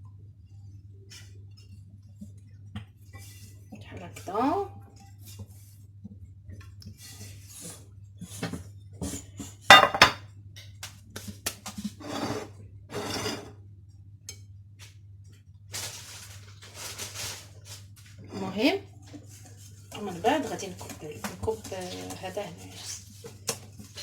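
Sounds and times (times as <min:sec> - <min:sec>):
bowls and utensils clinking: 0:09.7 - 0:10.2.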